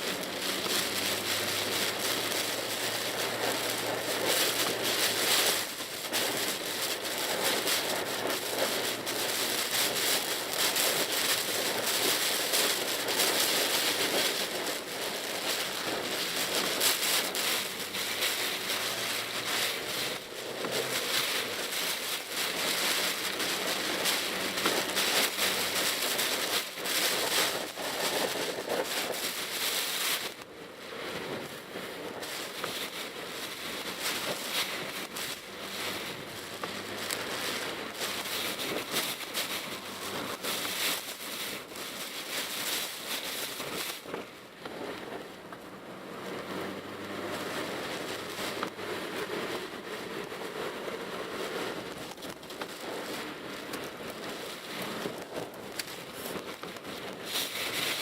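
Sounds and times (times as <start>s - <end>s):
car engine hum: 0.0s - 26.5s, 44.6s - 52.1s
heavy rain on car windshield: 0.0s - 58.0s
tyre noise on wet road: 0.0s - 58.0s.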